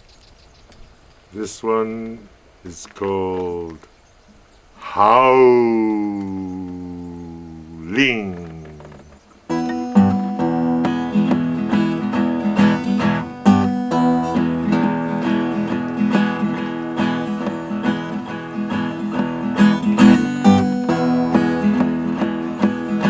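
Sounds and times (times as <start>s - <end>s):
acoustic guitar strumming: 5.0s - 23.0s.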